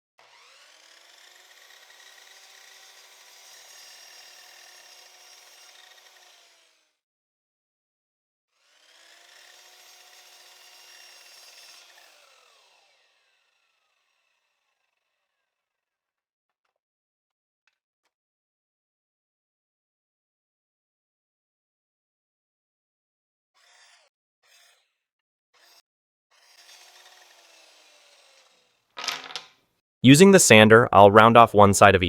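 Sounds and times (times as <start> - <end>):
miter saw cutting wood: 0.2 - 6.9, 8.6 - 14.2, 26.4 - 28.8.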